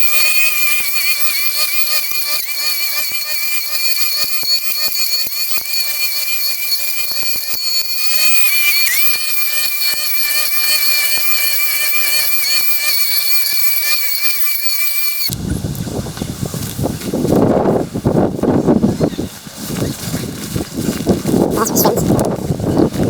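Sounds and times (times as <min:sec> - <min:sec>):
strimmer whining: 0:00.0 - 0:15.4.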